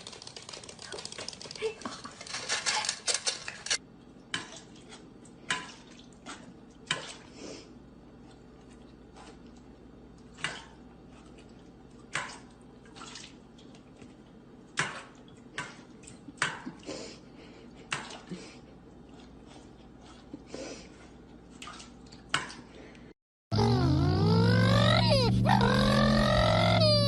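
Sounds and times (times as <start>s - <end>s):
low steady hum: 22.9s - 27.0s.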